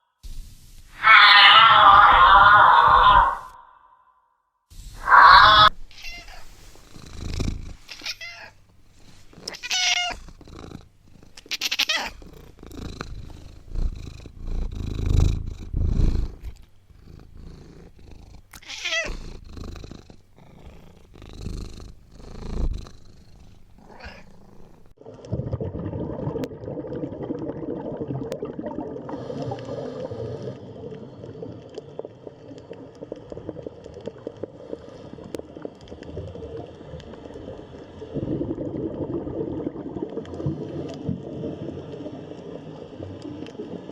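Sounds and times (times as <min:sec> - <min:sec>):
cat meowing: 0:01.0 - 0:03.6, 0:05.0 - 0:06.5, 0:07.9 - 0:08.5, 0:09.5 - 0:10.2, 0:11.5 - 0:12.2, 0:18.6 - 0:19.1
cat purring: 0:06.4 - 0:08.0, 0:08.9 - 0:25.0.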